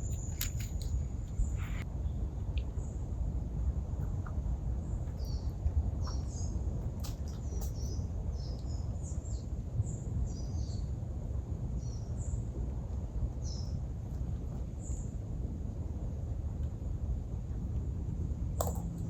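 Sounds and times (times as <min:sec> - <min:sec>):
small birds chirping: 0:00.0 - 0:01.8, 0:04.0 - 0:10.9, 0:13.4 - 0:15.2
steady low rumble: 0:00.0 - 0:19.0.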